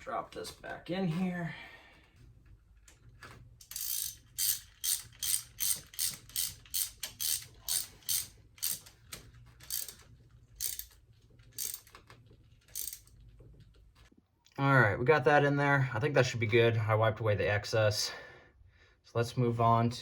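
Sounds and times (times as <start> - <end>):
ratchet wrench clicking: 3.6 - 10.0, 10.6 - 11.0, 11.6 - 12.0, 12.7 - 13.1.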